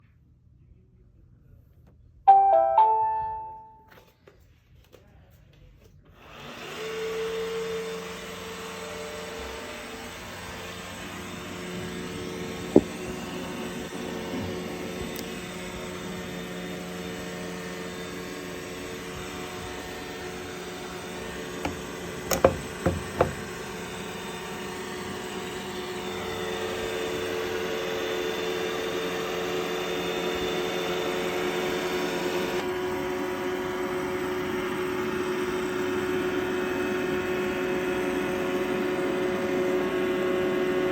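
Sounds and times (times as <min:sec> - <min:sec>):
robot vacuum motor whirring: 0:06.2 - 0:32.7
sharp knocks: 0:12.7 - 0:13.0, 0:21.6 - 0:23.4.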